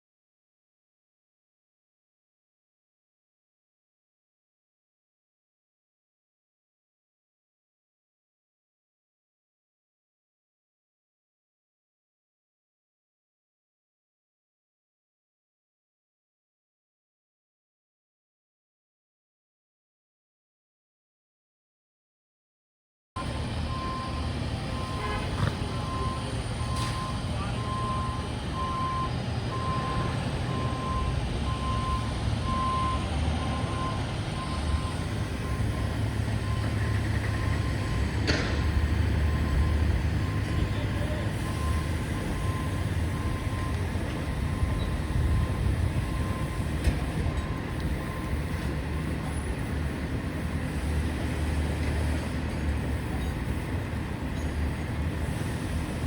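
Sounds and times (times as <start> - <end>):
reversing alarm beeping: 23.2 - 56.0
traffic and heavy vehicles rumbling: 23.2 - 56.0.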